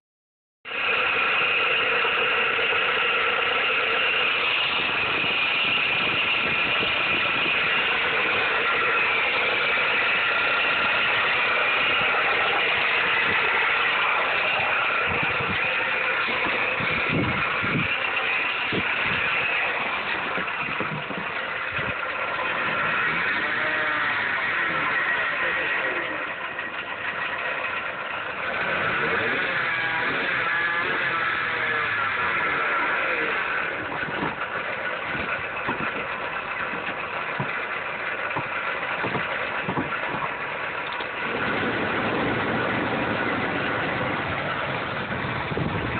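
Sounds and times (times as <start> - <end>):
car engine idling with grinding whine: 0.6 - 45.9
engine knocks: 0.7 - 45.9.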